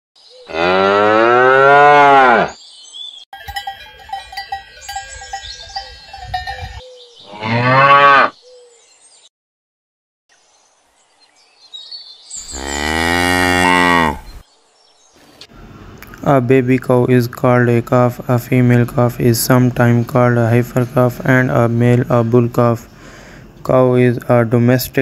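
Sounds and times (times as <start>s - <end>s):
cattle mooing: 0.5s - 2.5s, 7.3s - 8.4s, 12.4s - 14.4s
ringing tones: 3.4s - 6.8s.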